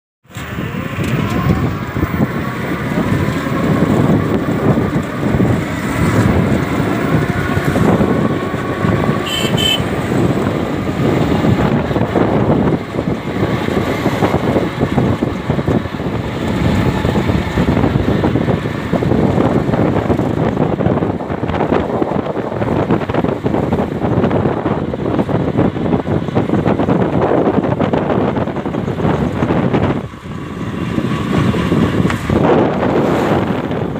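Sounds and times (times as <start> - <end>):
road traffic: 0.2 - 33.9
wind buffeting microphone: 0.3 - 33.9
short high-pitched toot: 9.2 - 9.9.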